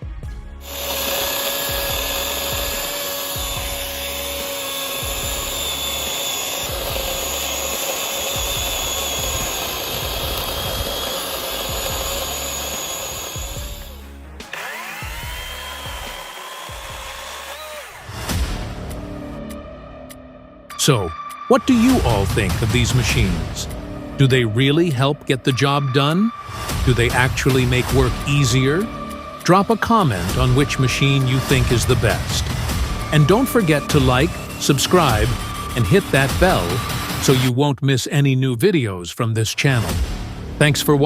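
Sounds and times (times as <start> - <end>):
electric chainsaw whine: 0.6 - 18.7, 30.1 - 37.5.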